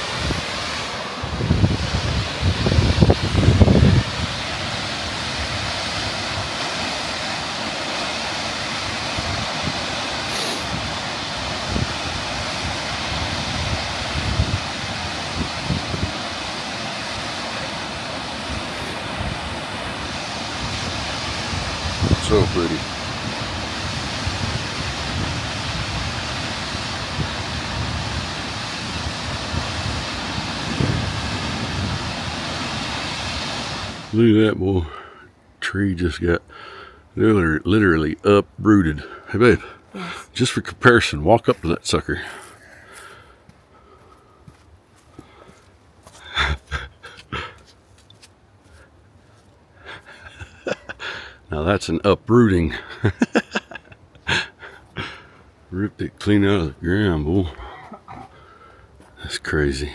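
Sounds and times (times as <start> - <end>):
wind rumbling on microphone: 0.0 - 34.3
waterfall rushing: 0.0 - 34.6.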